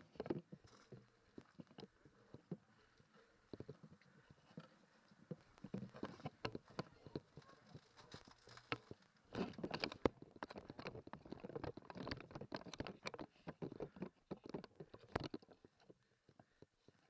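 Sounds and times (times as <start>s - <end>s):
gun jostling against camera: 5.4s - 15.6s.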